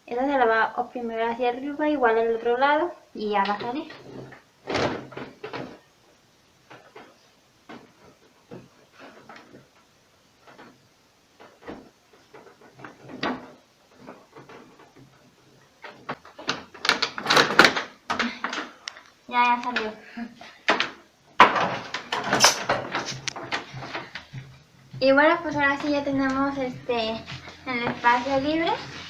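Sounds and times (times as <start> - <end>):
plastic panel clicking and rattling: 15.9 - 18.7.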